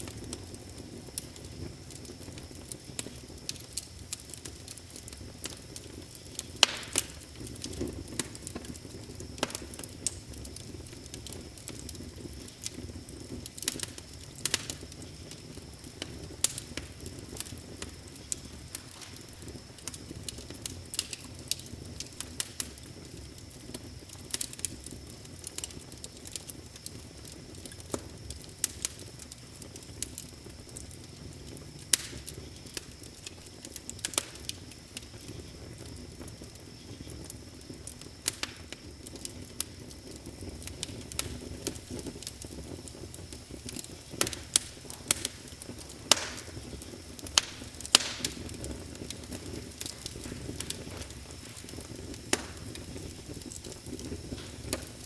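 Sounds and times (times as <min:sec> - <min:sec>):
wood fire crackling and popping: 0:00.0 - 0:55.0.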